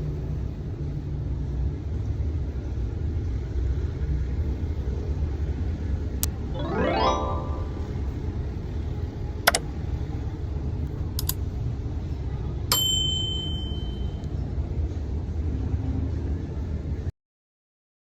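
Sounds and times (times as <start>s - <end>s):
bell-like ding: 12.7s - 14.1s.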